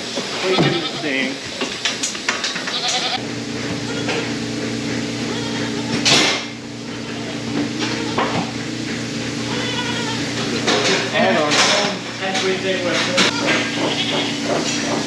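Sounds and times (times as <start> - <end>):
steady mechanical hum: 0.0 - 15.0
goats bleating: 0.4 - 1.4, 2.7 - 3.2, 3.8 - 4.3, 5.2 - 6.1, 6.8 - 8.5, 9.4 - 10.4, 13.2 - 14.4.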